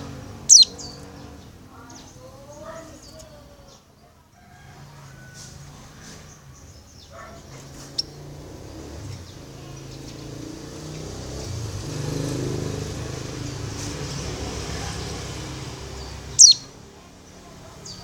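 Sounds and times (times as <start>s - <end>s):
faint high chirps: 0.5s - 1.1s, 16.1s - 16.8s.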